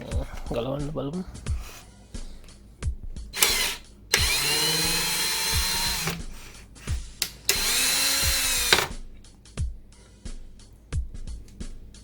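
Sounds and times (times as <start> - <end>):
cordless drill motor whining: 3.4 - 6.4, 7.5 - 8.9.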